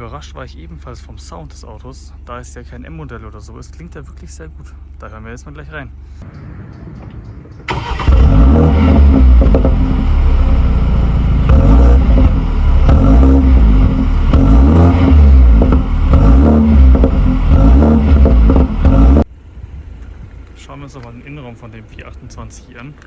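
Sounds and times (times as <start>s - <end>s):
car engine revving: 6.2s - 19.3s.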